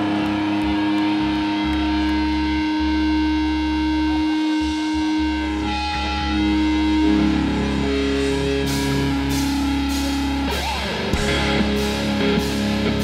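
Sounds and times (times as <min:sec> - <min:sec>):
electric guitars droning chords: 0:00.0 - 0:13.0
guitar feedback tones: 0:00.0 - 0:13.0
drums with cymbal hits: 0:08.6 - 0:13.0.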